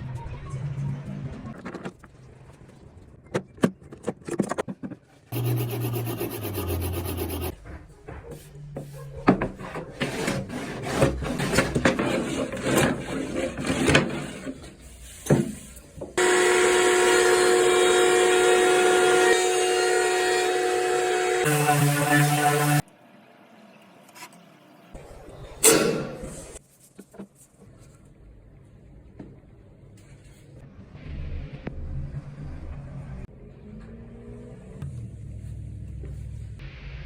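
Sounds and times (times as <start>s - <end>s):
steady motor hum: 5.4s - 7.5s
wood rubbing and rasping: 5.4s - 7.6s.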